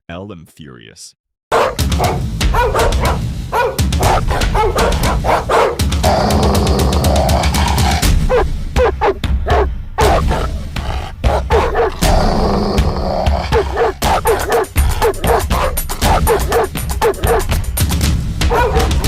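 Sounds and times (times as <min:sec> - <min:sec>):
dog barking: 0:01.5 - 0:05.9, 0:08.3 - 0:10.6, 0:11.2 - 0:12.1, 0:13.5 - 0:17.6, 0:18.5 - 0:19.0
loud bass-heavy music: 0:01.6 - 0:19.0.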